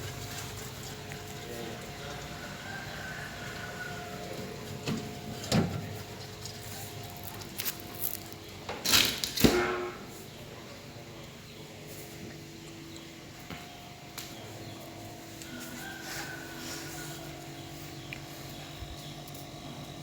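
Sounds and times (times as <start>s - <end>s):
refrigerator compressor hum: 0.0s - 20.0s.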